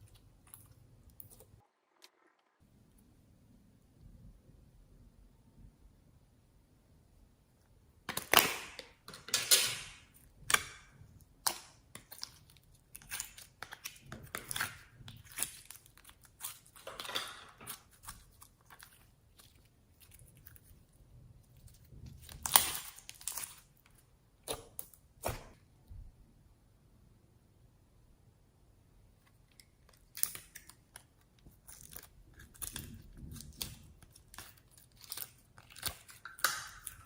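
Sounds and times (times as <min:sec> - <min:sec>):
slime squishing and crackling: 0:10.3 - 0:25.6, 0:29.8 - 0:37.0.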